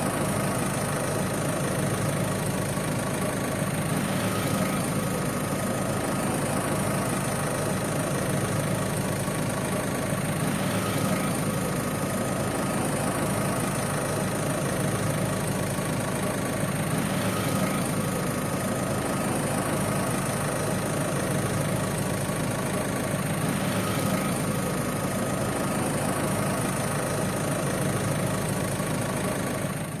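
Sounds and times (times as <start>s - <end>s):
van engine idling: 0.0s - 30.0s.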